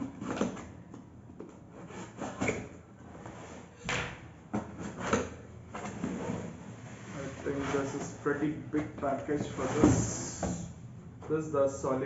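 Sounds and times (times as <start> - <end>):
cardboard box scraping: 5.9 - 8.3, 9.4 - 10.4.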